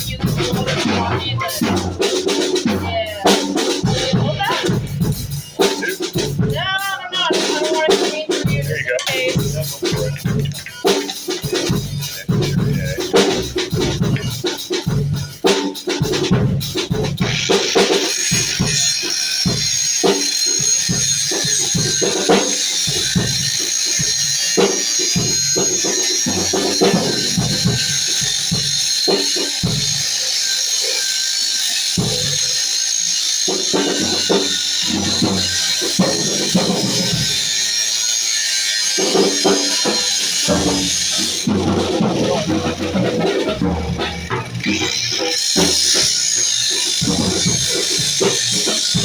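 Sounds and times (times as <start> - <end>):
high-pitched hiss: 0.0 - 43.5
music with drum beat: 0.0 - 49.0
high-pitched whine: 8.4 - 15.0.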